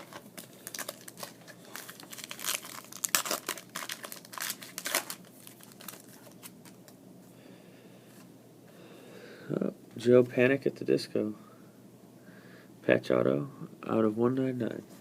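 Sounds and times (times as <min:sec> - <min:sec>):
wrapper crinkling: 0:00.0 - 0:07.0.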